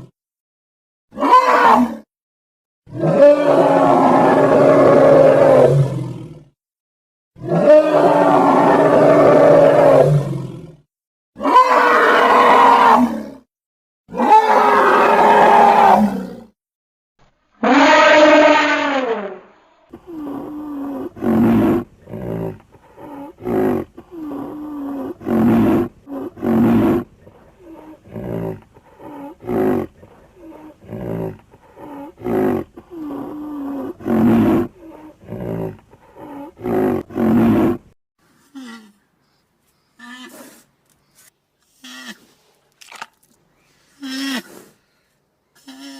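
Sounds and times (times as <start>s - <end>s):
large mammal calls: 45.6s - 45.9s.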